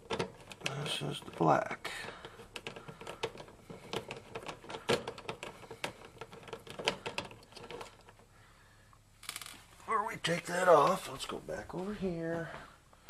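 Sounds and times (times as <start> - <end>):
tools clicking and tapping: 2.0 - 8.2.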